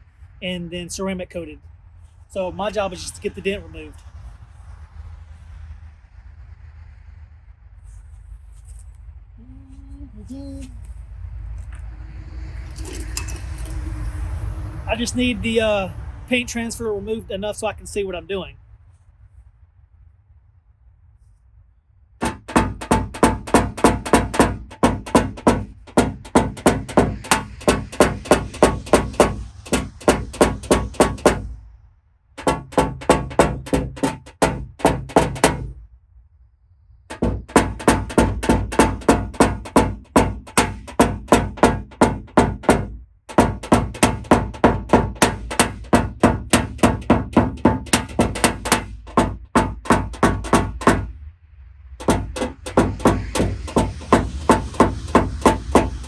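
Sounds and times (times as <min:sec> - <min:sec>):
music with percussive beat: 0:43.4 - 0:51.1, 0:52.0 - 0:56.0.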